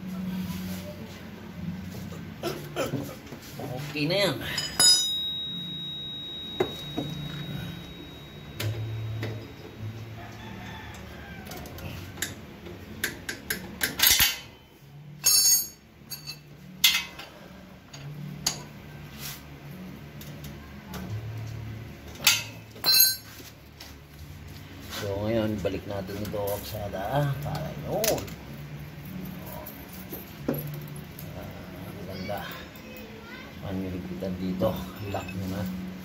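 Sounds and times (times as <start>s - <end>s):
metal tools clinking: 4.5s - 9.8s, 13.8s - 14.6s, 15.2s - 17.3s, 22.2s - 23.5s, 34.7s - 35.8s.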